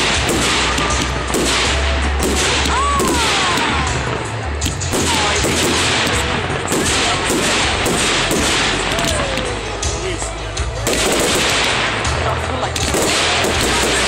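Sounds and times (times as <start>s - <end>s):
fireworks bangs and crackles: 0.0s - 14.0s.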